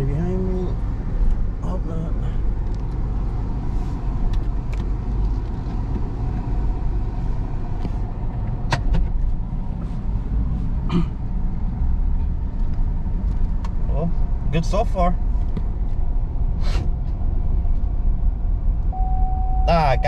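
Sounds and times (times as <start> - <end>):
car engine and road noise: 0.0 - 20.0.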